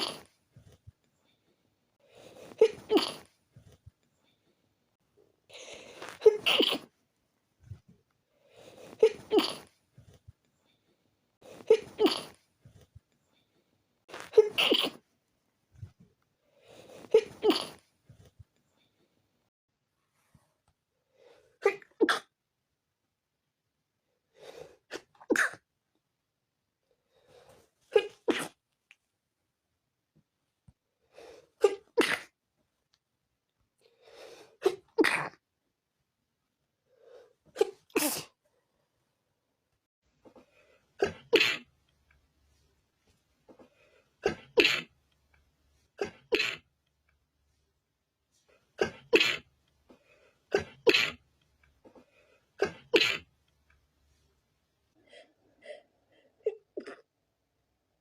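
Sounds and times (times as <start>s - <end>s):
person sneezing: 0.0s - 0.3s, 2.3s - 3.3s, 5.6s - 6.9s, 8.8s - 9.7s, 11.5s - 12.4s, 14.1s - 15.0s, 16.8s - 17.8s, 21.6s - 22.3s, 24.9s - 25.6s, 27.9s - 28.6s, 31.6s - 32.4s, 34.6s - 35.4s, 37.5s - 38.4s, 41.0s - 41.7s, 44.2s - 44.9s, 46.0s - 46.6s, 48.8s - 49.5s, 50.5s - 51.2s, 52.6s - 53.3s.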